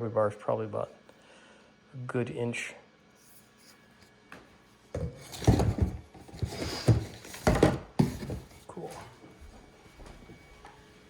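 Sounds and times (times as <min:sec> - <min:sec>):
objects being handled: 0:04.9 - 0:08.7.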